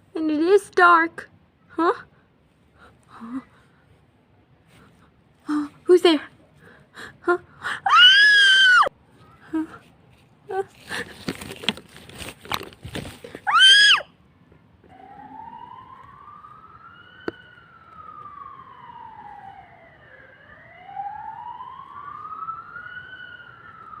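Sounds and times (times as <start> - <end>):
loud high cry: 7.9 - 8.9, 13.5 - 14.1
siren wailing: 14.9 - 24.0.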